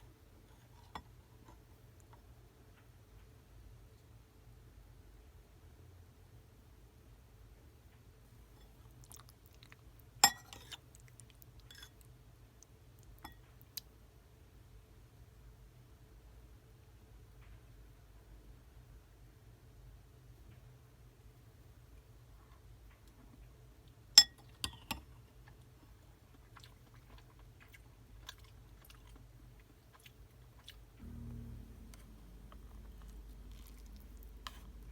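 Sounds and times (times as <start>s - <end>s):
low steady hum: 0.0s - 34.9s
crunchy chewing: 26.3s - 31.0s, 31.8s - 34.9s.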